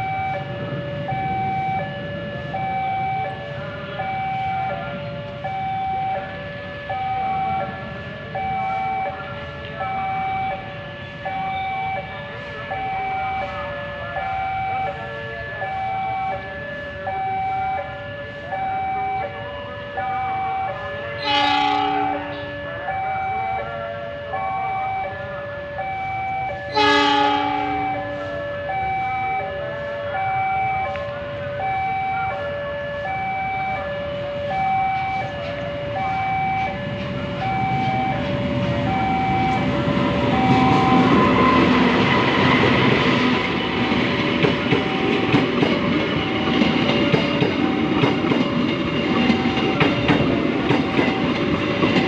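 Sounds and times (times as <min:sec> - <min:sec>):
level-crossing two-tone alarm: 0:00.0 - 0:52.0
hoarse locomotive horn blast: 0:21.0 - 0:22.9, 0:26.6 - 0:31.4, 0:34.5 - 0:44.0.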